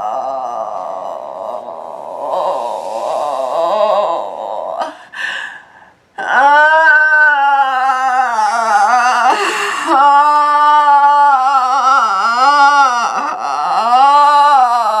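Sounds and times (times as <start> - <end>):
person holding long vocal tone: 0.0 - 5.3, 6.2 - 15.0.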